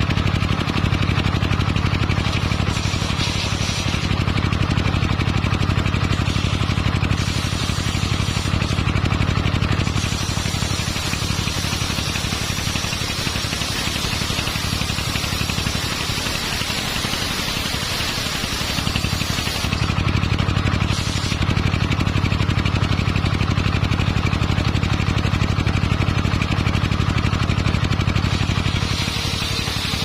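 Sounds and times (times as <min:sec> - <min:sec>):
engine-driven circular saw running: 0:00.0 - 0:30.0
bright hiss: 0:28.7 - 0:30.0.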